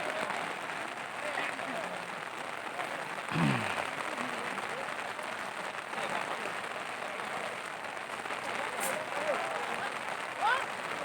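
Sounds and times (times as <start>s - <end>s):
faint voices: 0.0s - 7.6s
rain falling: 0.0s - 11.0s.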